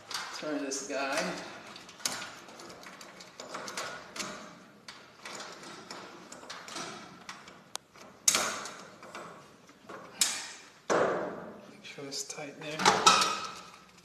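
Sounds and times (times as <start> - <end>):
metal clicks and scrapes: 0.0 - 10.6, 12.9 - 14.0.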